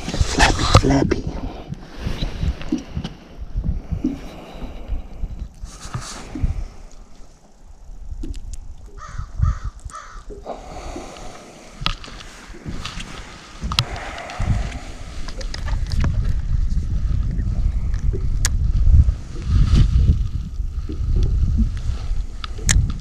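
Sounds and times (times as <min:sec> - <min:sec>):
wind rumble on microphone: 0:00.0 - 0:23.0
crow cawing: 0:09.0 - 0:10.3.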